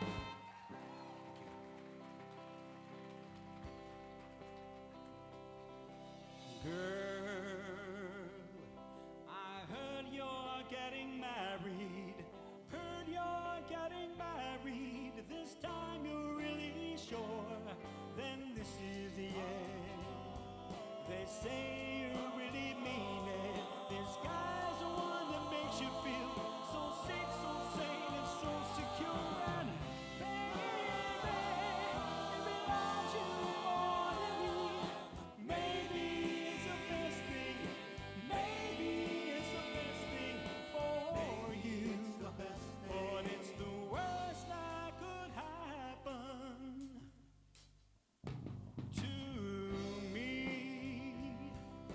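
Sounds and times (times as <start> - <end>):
voices singing in harmony: 0.0 - 0.5, 19.1 - 45.0
live band playing: 0.0 - 3.2, 19.3 - 43.8
steady drum beat: 20.4 - 42.3.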